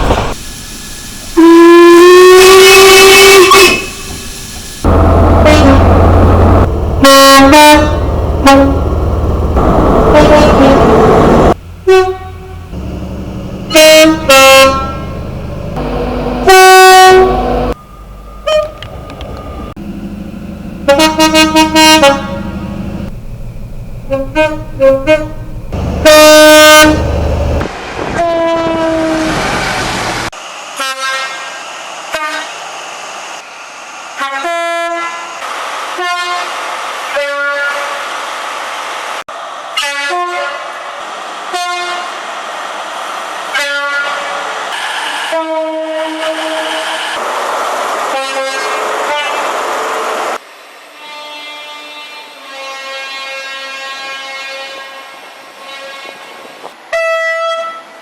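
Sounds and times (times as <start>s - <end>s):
two-tone train horn blasts: 1.4s - 4.0s, 4.9s - 12.9s, 13.7s - 15.2s, 15.8s - 17.8s, 18.4s - 18.9s, 20.8s - 22.8s, 24.1s - 29.4s, 34.2s - 35.3s, 36.0s - 36.5s, 37.1s - 38.0s, 39.8s - 40.7s, 41.5s - 42.2s, 43.5s - 44.4s, 45.3s - 47.0s, 48.1s - 49.5s, 50.9s - 58.0s
low engine rumble: 4.9s - 27.6s.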